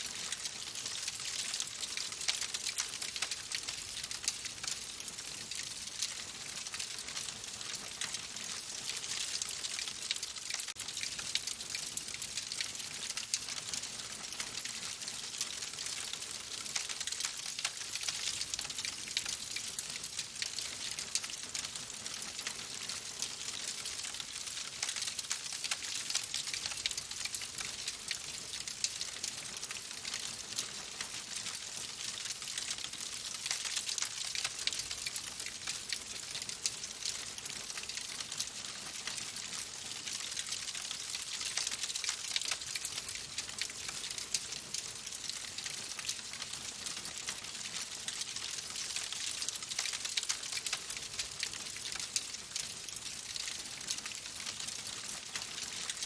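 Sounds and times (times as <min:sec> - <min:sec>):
wood fire crackling: 0:00.2 - 0:08.1, 0:48.7 - 0:52.0.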